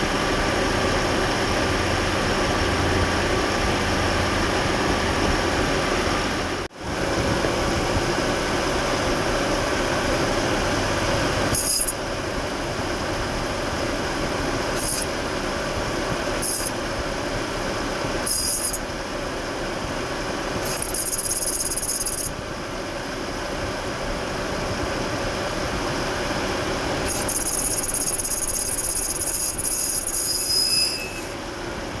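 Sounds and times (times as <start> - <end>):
car engine running: 0.0 - 30.4
clutch squealing: 11.5 - 12.0, 14.8 - 15.2, 16.4 - 16.8, 18.2 - 18.9, 20.6 - 22.4, 27.0 - 31.4.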